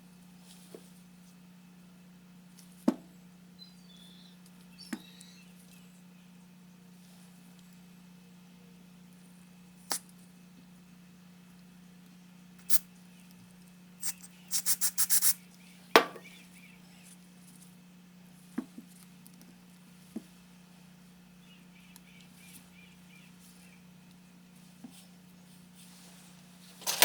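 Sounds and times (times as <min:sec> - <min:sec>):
tools clicking and knocking: 0:16.0 - 0:16.3.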